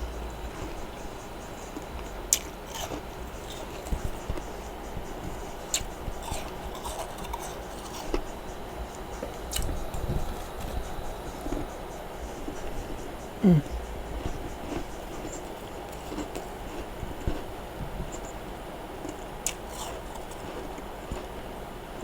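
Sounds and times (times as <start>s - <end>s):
soft chewing: 0.0s - 21.5s.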